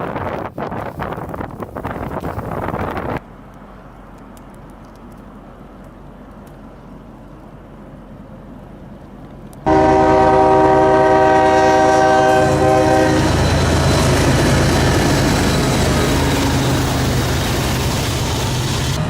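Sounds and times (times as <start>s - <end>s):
loud horn chord: 9.7s - 13.8s
heavy machinery noise: 9.7s - 19.0s.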